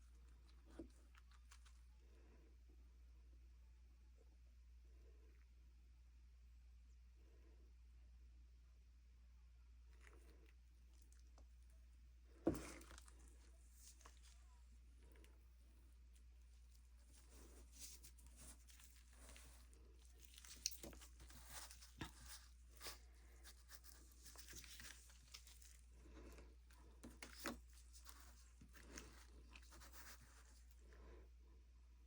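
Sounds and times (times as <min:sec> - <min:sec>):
handling crackles and scrapes: 0:00.0 - 0:02.6, 0:09.8 - 0:31.7.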